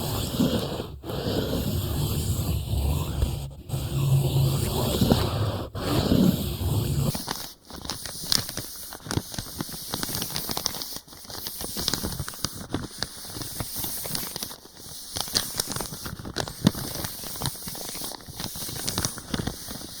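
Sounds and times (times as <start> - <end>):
hands rubbing microphone: 0.0 - 7.5
crackling and rustling: 0.0 - 20.0.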